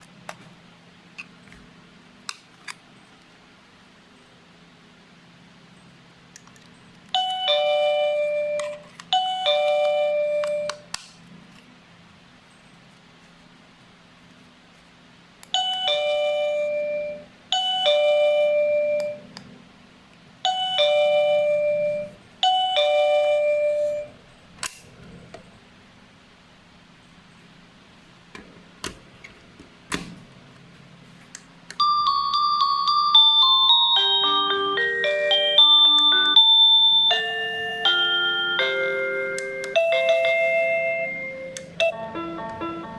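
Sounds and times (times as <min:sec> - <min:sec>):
doorbell ding-dong chime: 0:07.2 - 0:10.9, 0:15.6 - 0:19.3, 0:20.5 - 0:24.1, 0:31.8 - 0:42.9.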